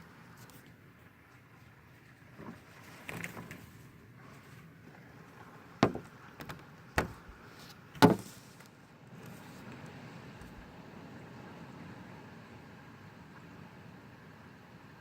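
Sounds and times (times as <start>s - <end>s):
faint steady background noise: 0.0s - 15.0s
sharp knocks: 5.8s - 7.3s, 8.0s - 8.3s.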